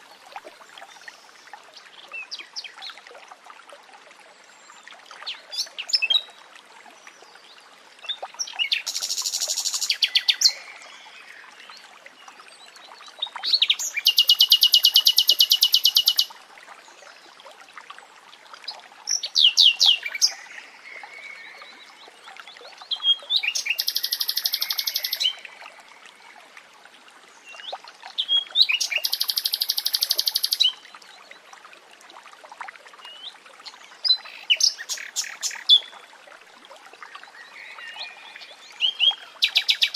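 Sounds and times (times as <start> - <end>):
nightingale singing: 23.0 - 25.4, 28.3 - 30.7.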